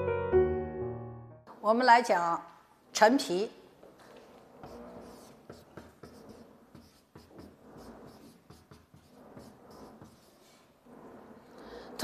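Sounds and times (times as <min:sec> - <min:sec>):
chalk tapping and scratching: 0:04.1 - 0:11.3.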